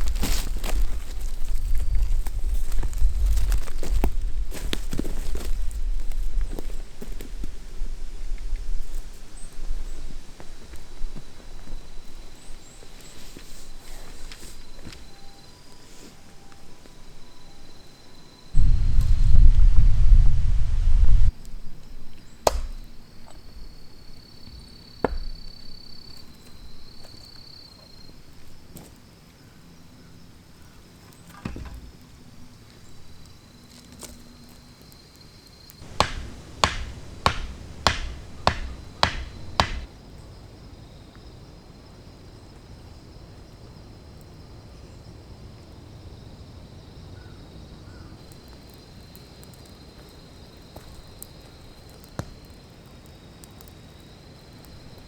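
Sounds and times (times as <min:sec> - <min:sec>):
faint high insect trill: 0:00.0 - 0:20.7, 0:21.3 - 0:55.0
sharp knocks: 0:35.8 - 0:39.9.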